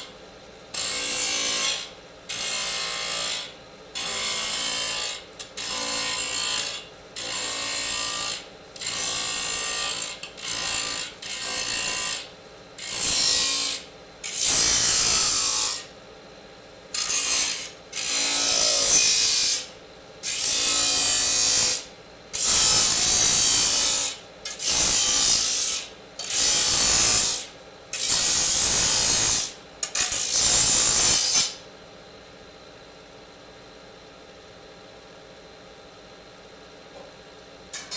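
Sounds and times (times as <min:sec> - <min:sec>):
disc saw cutting metal: 0:00.8 - 0:15.9, 0:17.0 - 0:31.6.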